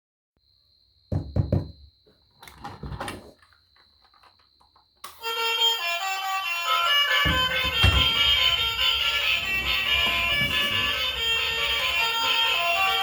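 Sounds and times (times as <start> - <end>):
loud knocks: 1.1 - 1.8, 7.2 - 13.0
music with sustained notes: 5.2 - 13.0.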